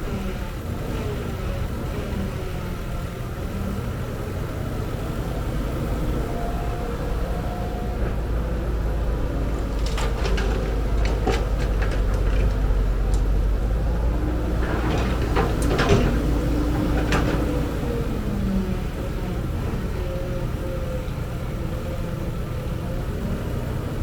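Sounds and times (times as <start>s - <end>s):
diesel earthmoving machinery running: 0.0s - 24.0s
metallic clanks and knocks: 9.3s - 17.8s.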